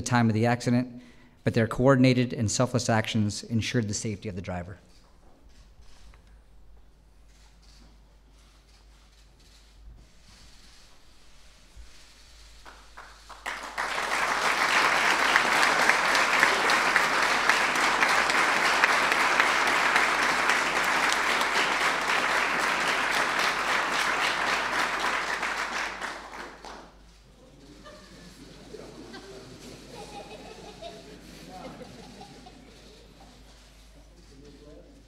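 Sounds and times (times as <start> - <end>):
audience applauding: 12.6 - 27.2.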